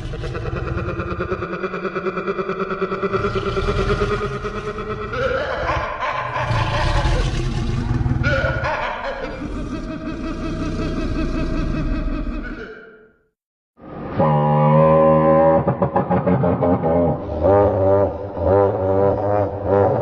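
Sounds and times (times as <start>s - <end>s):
dinosaur roar growling: 0.0s - 1.5s, 2.9s - 12.6s.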